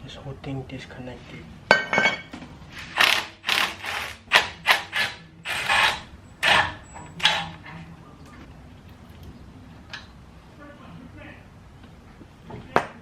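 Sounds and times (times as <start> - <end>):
tools scraping and clattering on metal: 1.7 - 3.0, 4.4 - 8.5.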